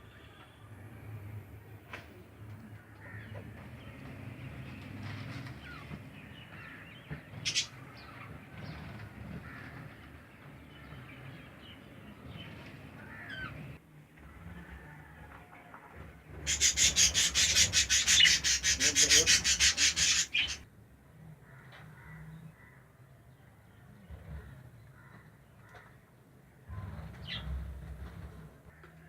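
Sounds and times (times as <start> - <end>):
rapid rasping scrapes: 16.5 - 20.6.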